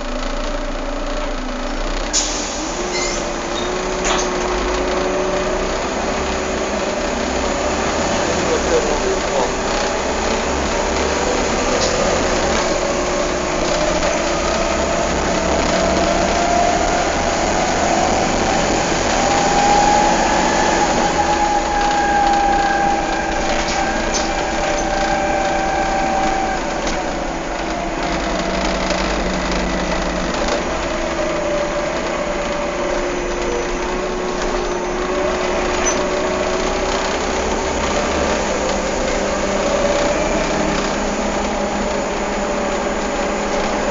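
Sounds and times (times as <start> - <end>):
diesel engine drone: 0.0 - 43.9.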